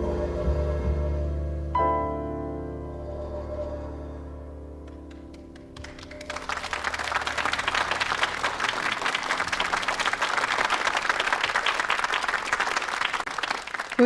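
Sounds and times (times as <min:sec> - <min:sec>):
audience applauding: 0:04.9 - 0:14.0.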